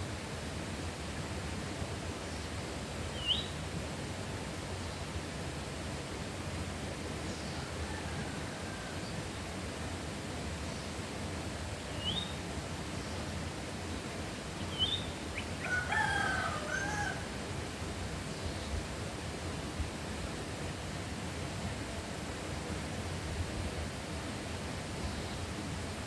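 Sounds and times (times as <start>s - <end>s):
rooster crowing: 7.6s - 9.2s, 15.6s - 17.4s
small bird chirping: 14.7s - 15.6s.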